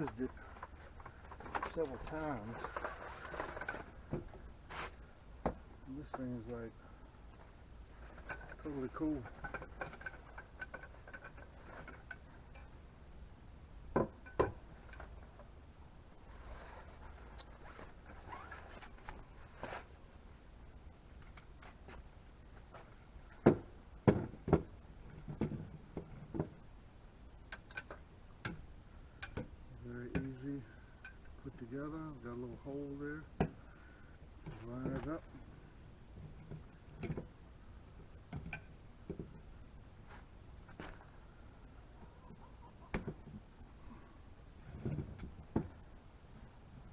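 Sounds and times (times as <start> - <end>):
crickets chirring: 0.0 - 46.9
camp table parts knocking: 8.1 - 12.8, 13.9 - 15.3, 23.3 - 26.6, 27.5 - 29.5, 36.2 - 37.4, 38.2 - 39.4, 42.9 - 43.4.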